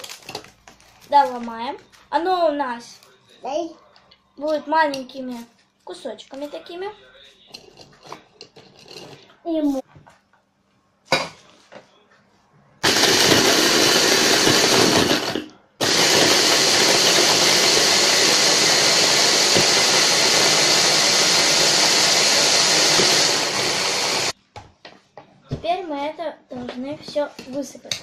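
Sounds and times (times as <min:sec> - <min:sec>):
electric blender grinding: 0:12.8 - 0:24.4.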